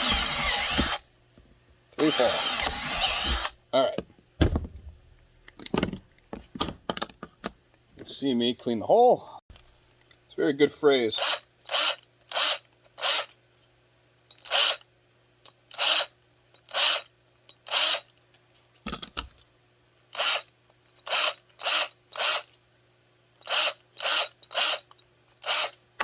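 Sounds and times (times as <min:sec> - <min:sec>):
hand tool rasping plastic: 0:00.0 - 0:01.0, 0:02.0 - 0:03.6
dull knock: 0:04.4 - 0:05.1.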